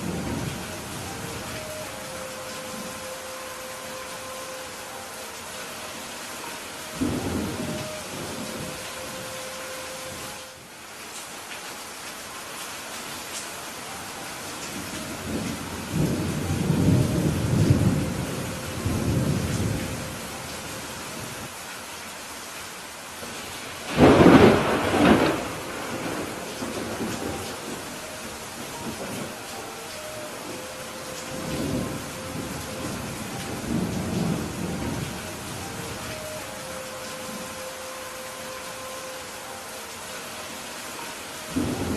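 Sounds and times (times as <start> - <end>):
steady rain falling: 0.0 - 41.9
thunder rumbling: 6.9 - 9.3, 23.8 - 29.6, 30.3 - 37.6, 41.5 - 41.9.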